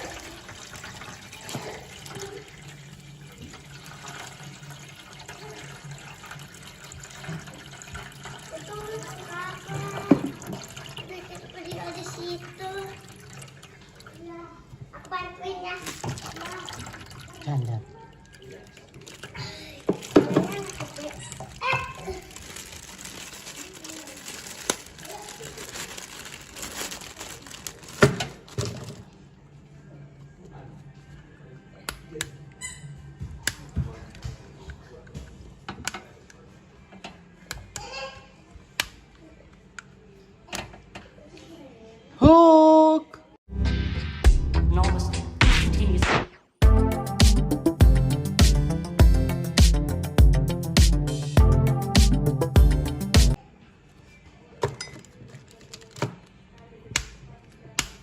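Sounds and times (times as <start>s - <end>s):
tap water splashing: 6.2s - 14.2s, 15.8s - 21.9s
plastic packaging crinkling: 18.2s - 29.1s, 55.0s - 56.4s.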